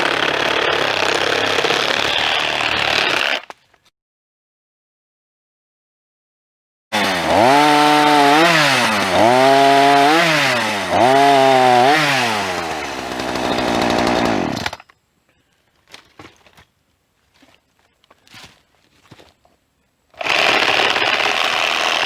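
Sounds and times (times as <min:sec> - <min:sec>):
chainsaw cutting wood: 0:00.0 - 0:03.5, 0:06.9 - 0:14.8, 0:20.2 - 0:22.0.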